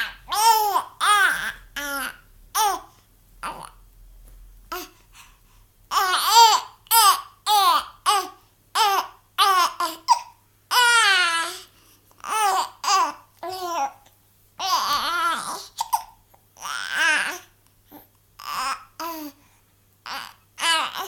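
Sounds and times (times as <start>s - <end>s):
baby babbling with hiccups: 0.0s - 3.8s, 5.9s - 11.6s, 14.6s - 19.4s.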